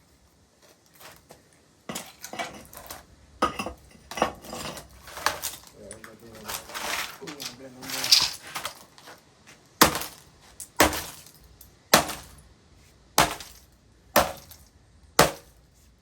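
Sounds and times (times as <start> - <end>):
hard blows smashing a computer: 9.8 - 11.3, 11.9 - 12.4, 13.2 - 13.6, 14.2 - 14.6, 15.2 - 15.6.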